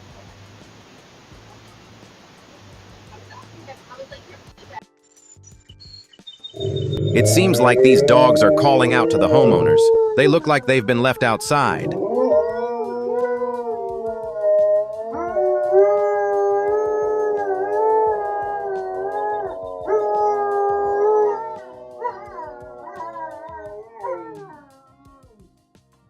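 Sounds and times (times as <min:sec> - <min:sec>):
dogs howling: 0:06.6 - 0:25.4.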